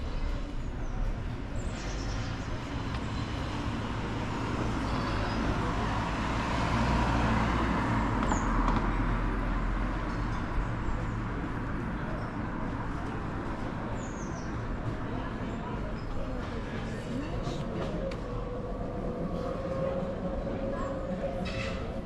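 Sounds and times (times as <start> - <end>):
city street traffic: 0.0 - 22.0
motor vehicle passing by: 2.7 - 10.3.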